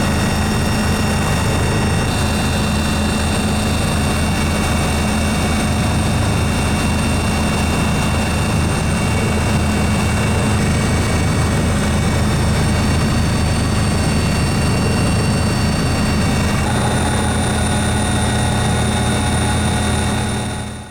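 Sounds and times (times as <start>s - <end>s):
helicopter rotor and engine: 0.0s - 20.9s
thin high whines: 14.3s - 20.9s.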